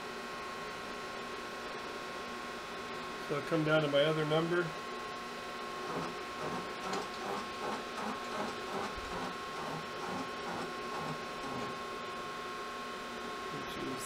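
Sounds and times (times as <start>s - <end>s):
rhythmic mechanical thumping: 5.8s - 11.8s
milling machine whining: 5.8s - 11.9s.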